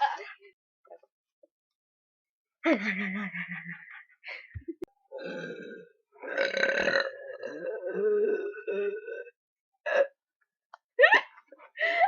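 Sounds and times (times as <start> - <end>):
person burping: 5.1 - 10.2.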